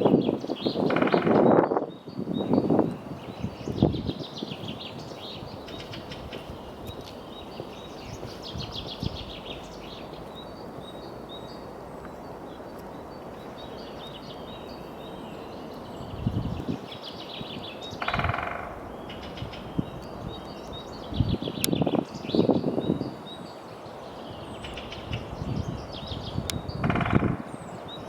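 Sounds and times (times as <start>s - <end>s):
small birds chirping: 0.0s - 28.0s
woodpecker tapping on wood: 0.8s - 1.5s, 18.0s - 19.6s, 26.8s - 27.5s.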